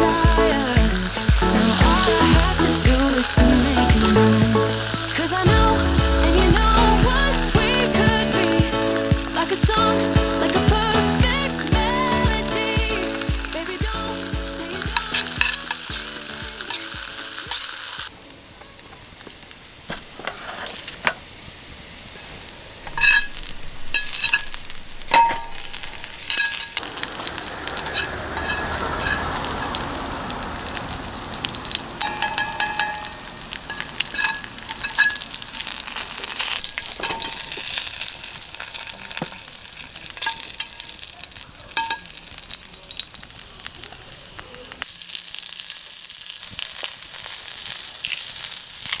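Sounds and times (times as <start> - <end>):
food sizzling in a pan: 0.0 - 49.0
utensil scraping a pan: 19.9 - 21.2.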